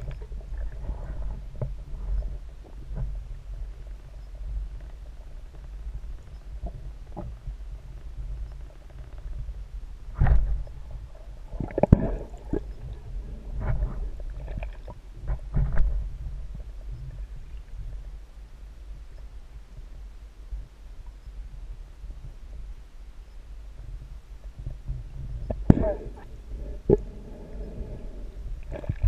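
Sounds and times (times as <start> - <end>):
low underwater rumble: 0.0 - 29.0
water bubbling: 10.7 - 15.0, 25.5 - 29.0.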